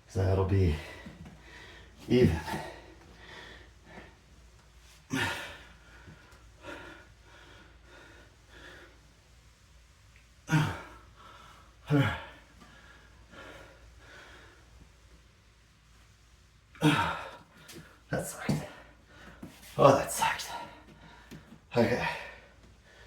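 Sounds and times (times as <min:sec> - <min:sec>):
heavy breathing: 0:00.7 - 0:04.4, 0:16.8 - 0:23.0
man grunting with effort: 0:16.8 - 0:17.4.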